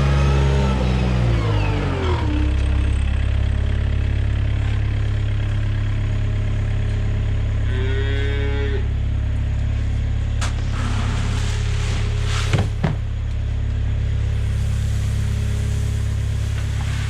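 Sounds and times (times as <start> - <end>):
low engine drone: 0.0 - 17.0
cow mooing: 7.6 - 8.9.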